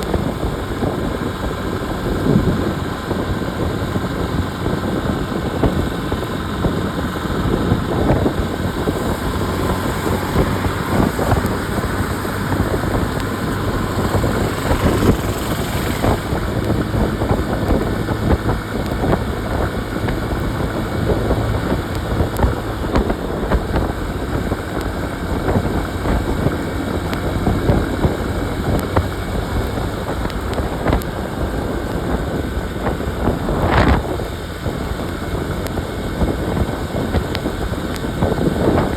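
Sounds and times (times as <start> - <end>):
motorcycle engine running: 0.0 - 38.9
road noise: 0.0 - 38.9
wind buffeting microphone: 0.0 - 38.9.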